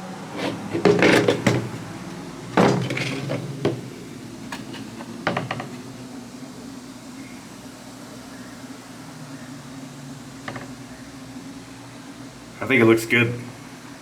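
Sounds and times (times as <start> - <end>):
hard objects clattering and knocking: 0.3 - 6.1, 10.4 - 10.8.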